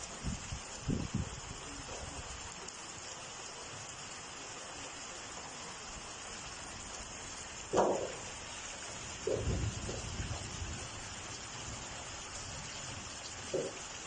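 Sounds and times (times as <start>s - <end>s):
wind: 0.0s - 14.0s.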